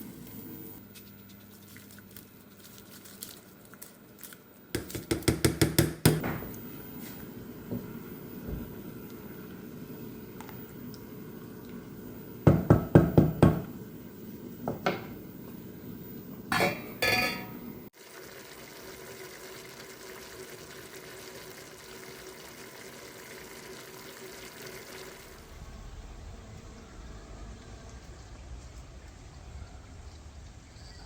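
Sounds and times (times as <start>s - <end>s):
dishes and utensils clattering: 16.5s - 17.7s.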